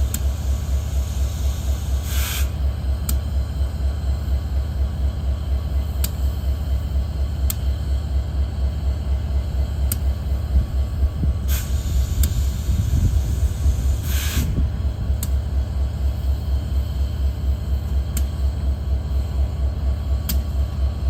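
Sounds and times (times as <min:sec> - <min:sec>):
diesel locomotive idling: 0:00.0 - 0:21.0
air hiss bursts: 0:00.8 - 0:02.6, 0:11.5 - 0:14.6.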